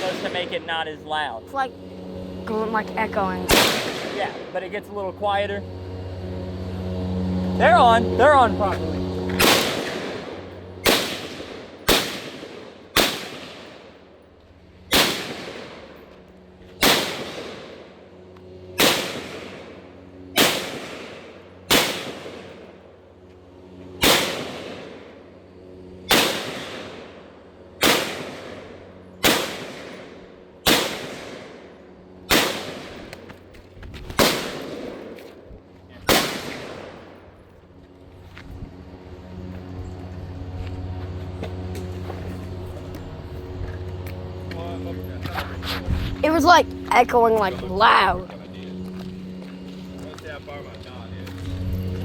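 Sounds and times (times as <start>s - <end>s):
gunshots with echo: 0.0s - 0.7s, 3.5s - 4.4s, 9.4s - 13.8s.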